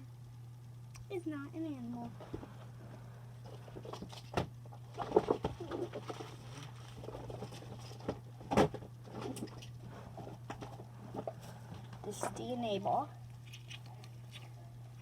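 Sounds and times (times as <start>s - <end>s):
low electrical hum: 0.0s - 15.0s
fidget toys clicking and rustling: 13.4s - 14.5s.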